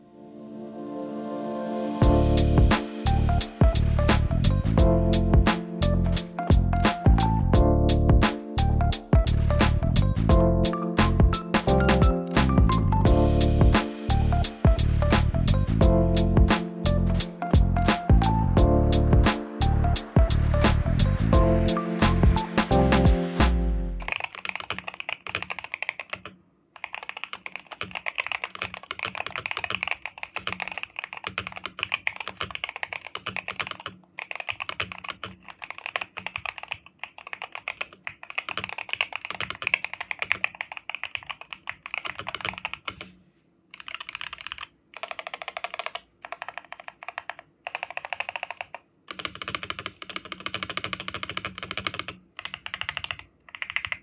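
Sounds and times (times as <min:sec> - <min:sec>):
fast typing on keyboard: 0:24.1 - 0:54.0.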